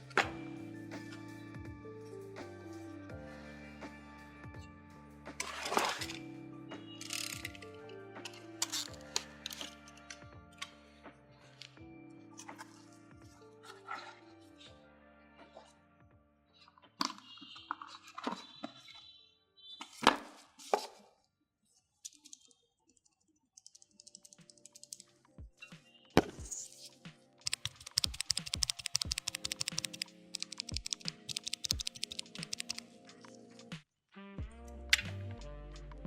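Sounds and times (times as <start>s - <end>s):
background music: 0.0s - 18.3s, 23.6s - 36.0s
typing on mechanical keyboard: 23.6s - 25.1s, 27.4s - 32.9s
sharp keyboard clacks: 27.4s - 32.9s.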